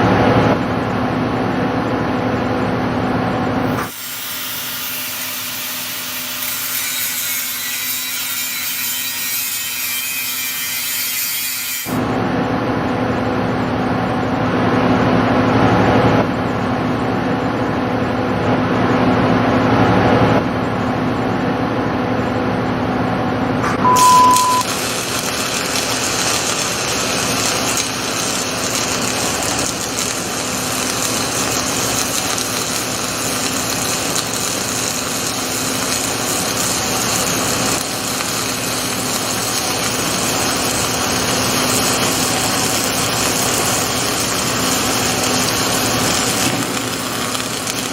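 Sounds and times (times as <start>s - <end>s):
welding machine humming: 3.6s - 12.2s, 23.6s - 47.9s
short beep: 23.6s - 24.7s.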